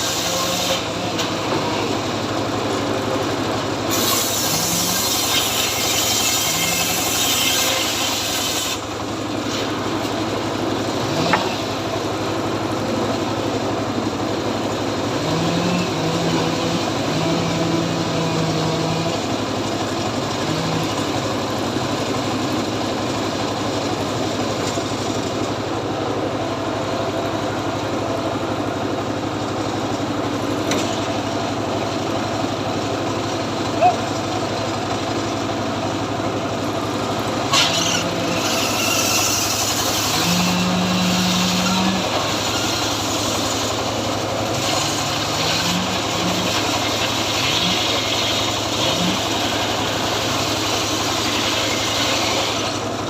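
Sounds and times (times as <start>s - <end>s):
chainsaw running: 0.0s - 25.8s, 29.4s - 53.0s
chain cutting through wood: 37.5s - 43.8s.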